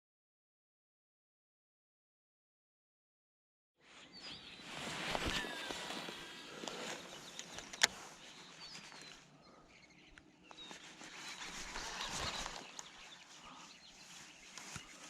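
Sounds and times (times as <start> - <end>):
bird chirps: 3.9 - 15.0
rustling noise: 4.3 - 9.3, 10.4 - 15.0.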